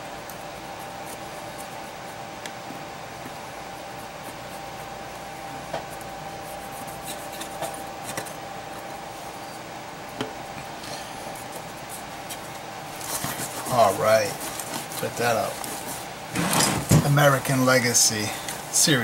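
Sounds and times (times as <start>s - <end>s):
rubbing sounds: 3.2s - 9.4s, 11.2s - 17.3s.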